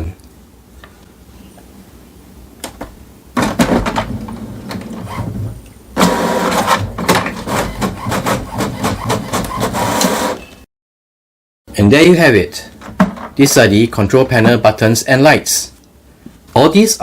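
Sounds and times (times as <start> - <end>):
printer steady whine: 3.9 - 10.6
inkjet printer mechanism whirring: 6.0 - 10.4
printer rapid clicking: 6.0 - 10.4.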